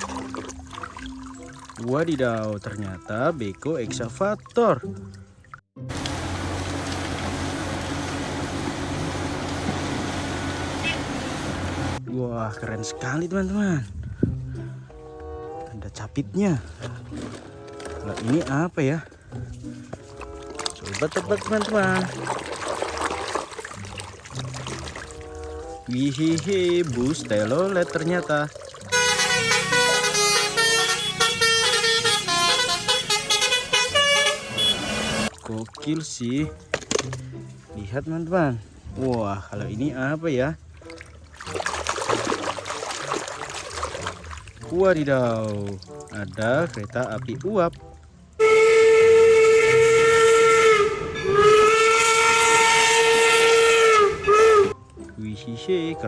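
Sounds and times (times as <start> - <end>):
multi-tone musical bus horn: 10.7 - 12.0, 28.8 - 35.3, 48.4 - 54.8
steam locomotive whistle: 28.9 - 35.3, 48.4 - 54.8.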